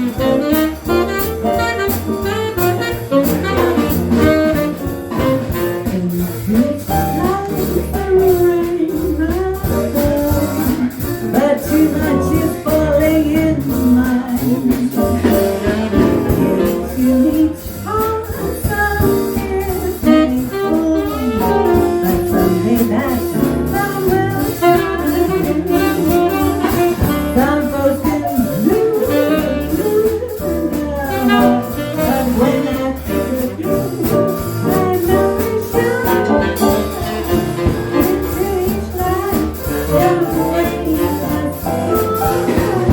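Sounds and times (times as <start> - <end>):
tenor saxophone: 0.0 - 8.7, 9.6 - 42.9
double bass: 0.0 - 42.9
drums with cymbal strokes: 0.0 - 42.9
piano: 0.0 - 42.9
woman singing: 0.0 - 42.9.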